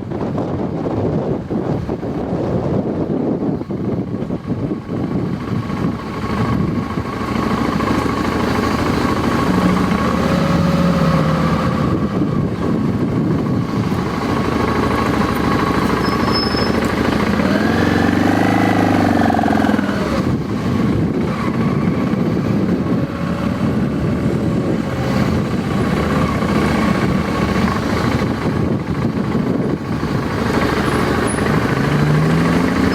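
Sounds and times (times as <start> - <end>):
motorcycle engine running: 0.0 - 32.9
wind rushing: 8.2 - 16.0, 17.0 - 32.9.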